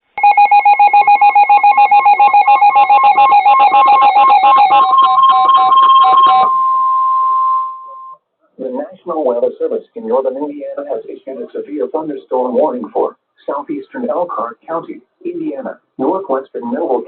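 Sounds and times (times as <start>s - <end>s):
rapid electronic beeping: 0.2s - 6.5s
steady warning alarm tone: 0.2s - 8.2s.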